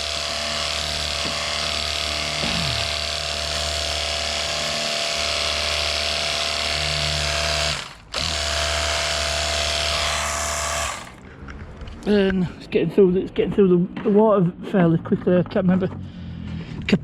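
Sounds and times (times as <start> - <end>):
pressure washer pump running: 0.0 - 11.2.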